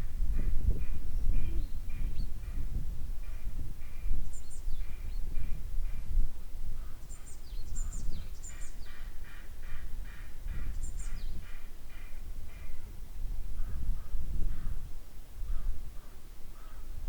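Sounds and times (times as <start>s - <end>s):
low wind rumble: 0.0s - 17.0s
bird chirping: 7.0s - 9.1s
crows calling harshly: 8.6s - 12.8s, 15.5s - 16.9s.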